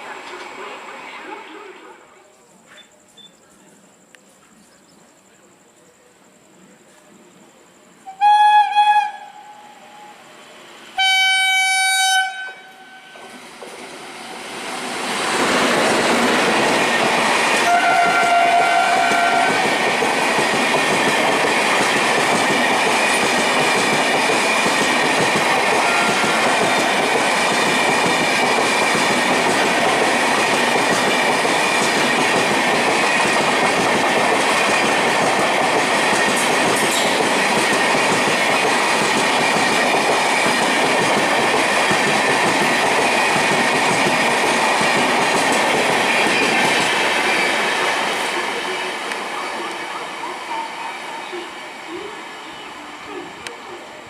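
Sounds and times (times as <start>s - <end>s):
train horn blasts: 11.0s - 13.3s, 17.6s - 19.6s, 25.8s - 26.5s
train wheels rattling on rails: 12.2s - 50.4s.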